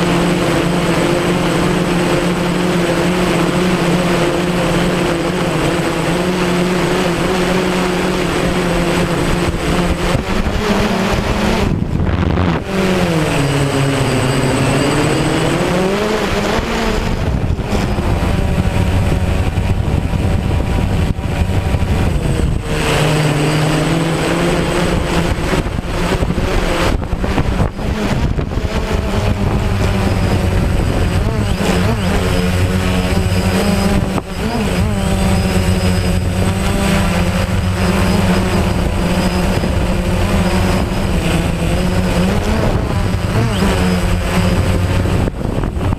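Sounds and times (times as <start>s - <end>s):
drone propellers buzzing: 0.0s - 45.9s
wind rushing over microphone: 0.0s - 45.9s.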